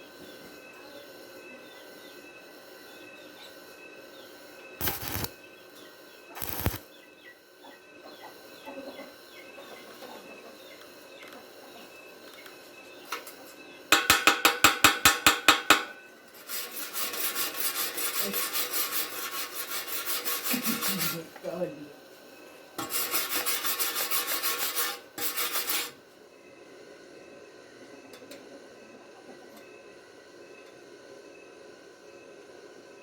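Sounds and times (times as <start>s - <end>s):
chipping hammer tapping metal: 4.8s - 5.3s, 6.4s - 6.8s, 13.9s - 16.0s
wire brush scrubbing metal: 4.8s - 5.3s, 6.4s - 6.8s, 13.9s - 21.4s, 22.8s - 26.0s.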